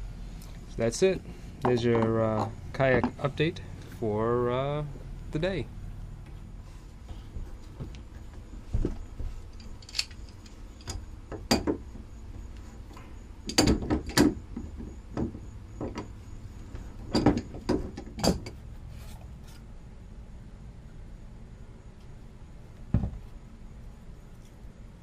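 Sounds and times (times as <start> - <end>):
low steady hum: 0.0 - 25.0
things being handled clattering: 1.6 - 4.0.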